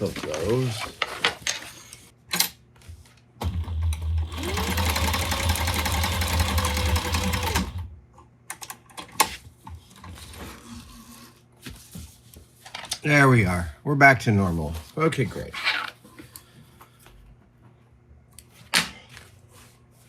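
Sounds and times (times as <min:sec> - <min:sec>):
sewing machine stitching: 0:03.4 - 0:07.9.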